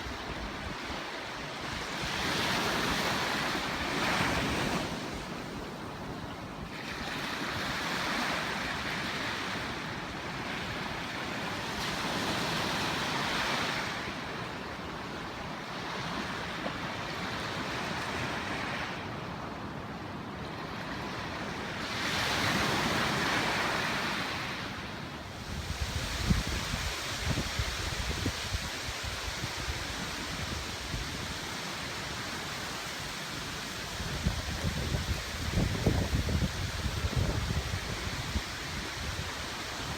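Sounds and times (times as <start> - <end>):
ocean surf breaking: 21.8 - 39.9
wind buffeting microphone: 25.3 - 31.5, 33.8 - 39.9.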